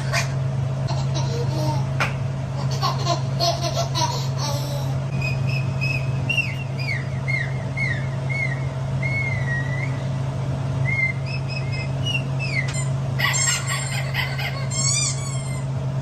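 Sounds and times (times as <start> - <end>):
low hum: 0.0 - 16.0
high whistled chirps: 5.1 - 10.2, 10.8 - 12.9.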